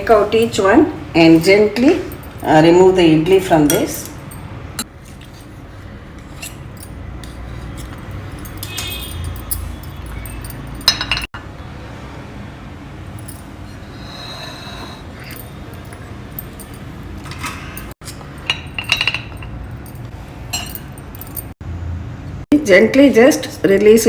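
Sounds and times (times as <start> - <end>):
metal cups clinking: 6.2 - 11.3, 15.1 - 21.5.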